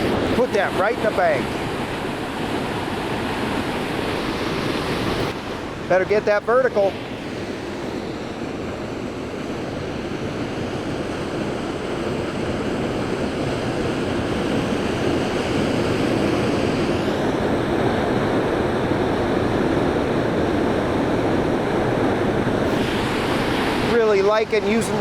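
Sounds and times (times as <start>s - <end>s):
waterfall rushing into pool: 0.0s - 8.3s, 14.8s - 25.0s.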